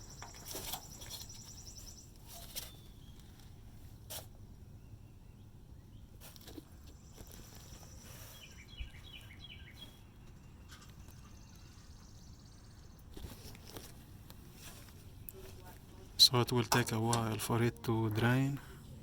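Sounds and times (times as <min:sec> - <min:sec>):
bird chirping: 0:00.0 - 0:03.7, 0:04.6 - 0:13.8.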